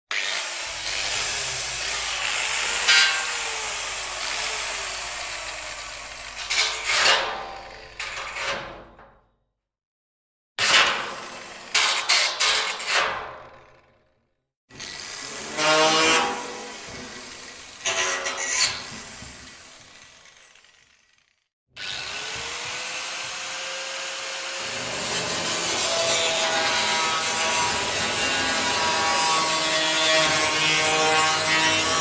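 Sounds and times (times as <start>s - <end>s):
angle grinder grinding metal: 0.1s - 8.5s, 14.8s - 21.2s, 21.8s - 32.0s.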